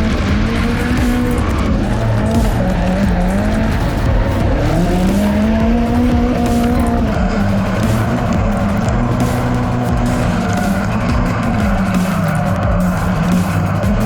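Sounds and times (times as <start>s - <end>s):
car engine revving: 0.0s - 14.0s.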